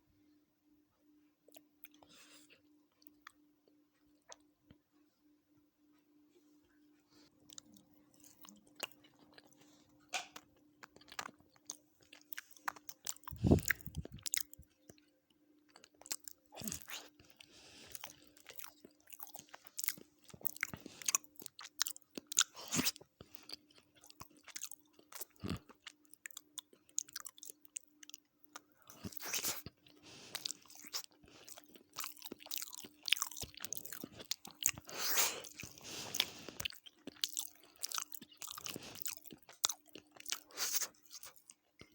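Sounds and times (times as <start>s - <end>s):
crunching and wet chewing: 7.4s - 41.9s
steady low hum: 12.6s - 15.3s.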